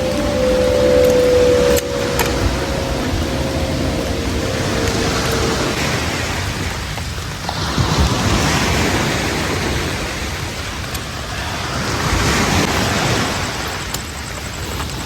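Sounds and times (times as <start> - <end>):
wind buffeting microphone: 0.0 - 6.9.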